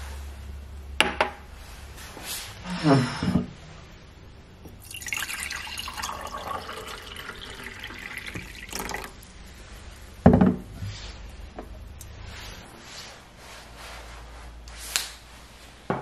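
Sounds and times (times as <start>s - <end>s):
tap water running into sink: 4.7s - 9.2s.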